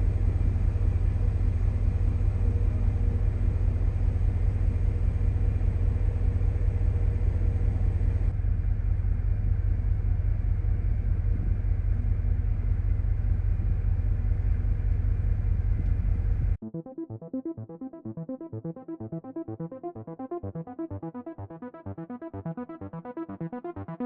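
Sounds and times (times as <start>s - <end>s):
faint hum: 0.0s - 16.6s.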